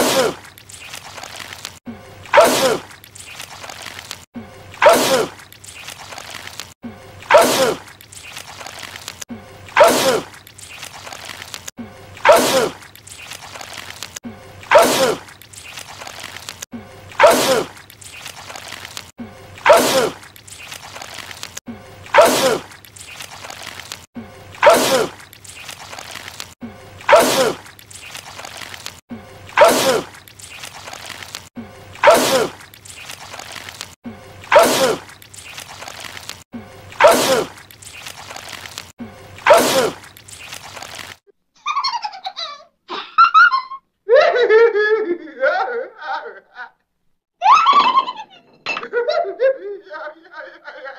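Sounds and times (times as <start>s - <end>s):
man sneezing loudly: 0.0s - 0.4s, 2.3s - 2.9s, 4.8s - 5.4s, 7.3s - 7.8s, 9.8s - 10.3s, 12.2s - 12.8s, 14.7s - 15.2s, 17.2s - 17.7s, 19.6s - 20.2s, 22.1s - 22.7s, 24.6s - 25.2s, 27.1s - 27.6s, 29.6s - 30.1s, 32.0s - 32.6s, 34.5s - 35.1s, 37.0s - 37.6s, 39.4s - 40.0s.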